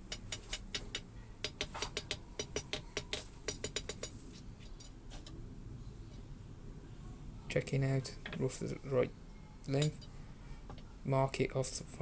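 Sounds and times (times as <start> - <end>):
hammer tapping iron on anvil: 0.0 - 4.1.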